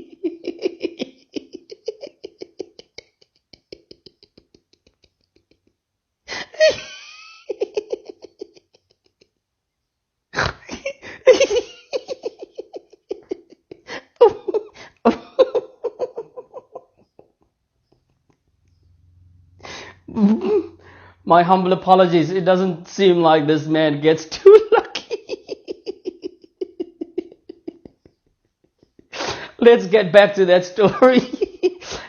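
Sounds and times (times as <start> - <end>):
person laughing: 0.0 - 9.4, 10.4 - 18.6, 19.6 - 20.9, 24.4 - 29.7, 30.8 - 32.0.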